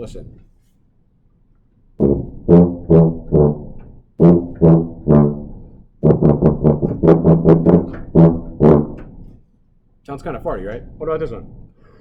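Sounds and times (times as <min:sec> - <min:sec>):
tuba notes with blatty tone: 0:02.0 - 0:09.4, 0:10.2 - 0:11.8.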